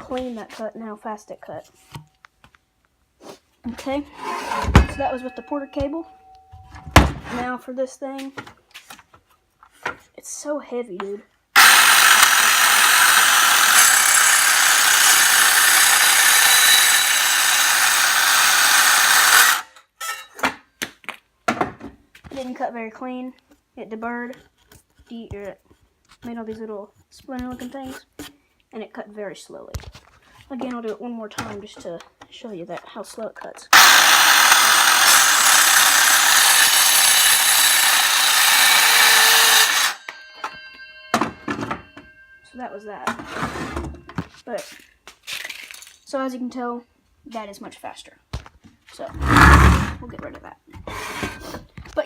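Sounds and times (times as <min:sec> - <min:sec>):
power saw cutting wood: 0:11.6 - 0:19.8, 0:33.7 - 0:40.1, 0:49.1 - 0:50.1.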